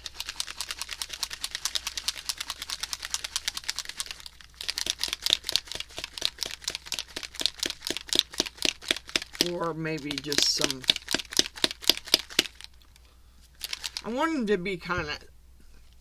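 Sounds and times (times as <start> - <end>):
bottle being shaken rattling: 0.0 - 13.0, 13.6 - 14.2.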